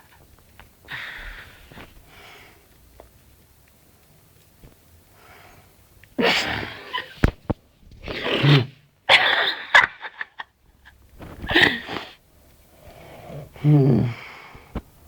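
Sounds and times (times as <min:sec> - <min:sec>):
man snoring: 0:13.0 - 0:14.3.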